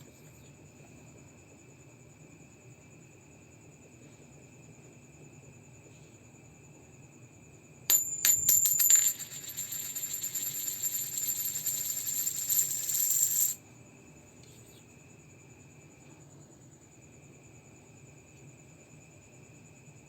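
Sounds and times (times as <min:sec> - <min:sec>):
coin bouncing and ringing: 0:07.9 - 0:13.6.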